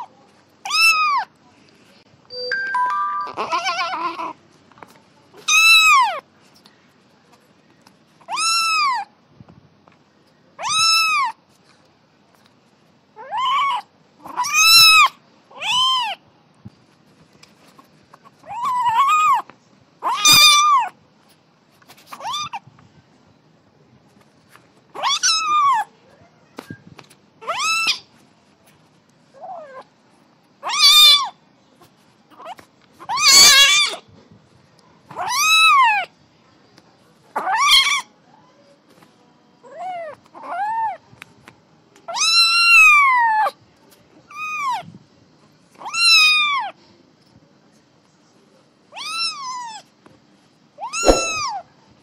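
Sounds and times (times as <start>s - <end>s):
kitten meowing: 0.7s - 1.3s, 3.2s - 4.4s, 5.4s - 6.2s, 8.3s - 9.1s, 10.6s - 11.4s, 13.2s - 16.2s, 20.0s - 20.9s, 27.4s - 28.0s, 30.7s - 31.3s, 33.1s - 34.0s, 42.2s - 43.4s, 45.9s - 46.7s, 49.0s - 49.8s, 50.8s - 51.6s.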